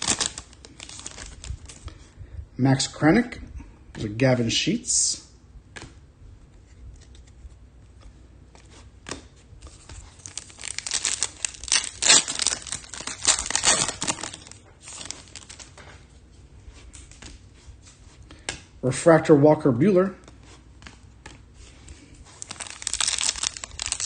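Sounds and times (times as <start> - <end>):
foil wrapper tearing and crinkling: 0.0 - 1.8, 9.7 - 15.8, 22.2 - 24.0.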